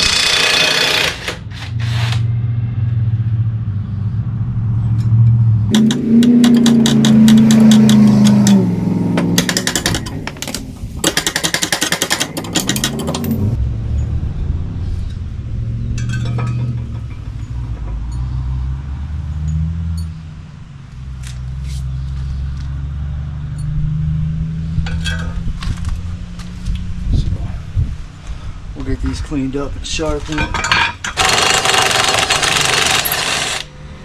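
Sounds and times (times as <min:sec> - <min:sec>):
impact wrench whirring and hammering: 0:00.0 - 0:02.3, 0:05.7 - 0:13.6, 0:31.0 - 0:33.7.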